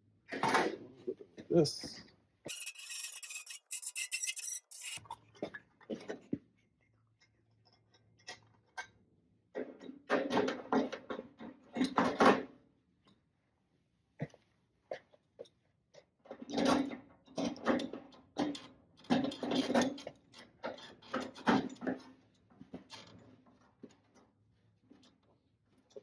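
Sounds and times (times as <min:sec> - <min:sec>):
sheet metal scraping: 0:02.5 - 0:05.0.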